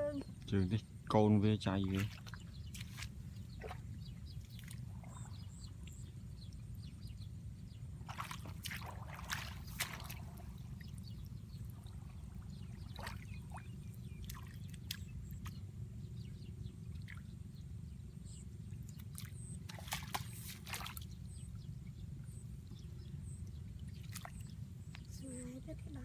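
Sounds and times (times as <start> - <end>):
water sloshing and dripping: 1.7 - 6.7, 8.0 - 15.6, 18.9 - 21.6, 22.2 - 26.0.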